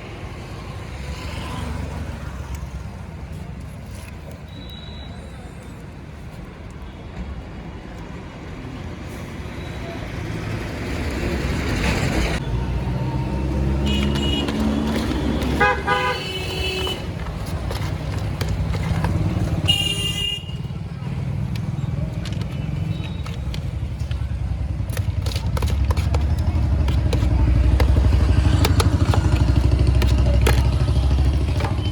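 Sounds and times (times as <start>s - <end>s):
road traffic rumble: 0.0s - 31.9s
vehicle horns honking: 13.8s - 17.2s, 19.5s - 20.7s.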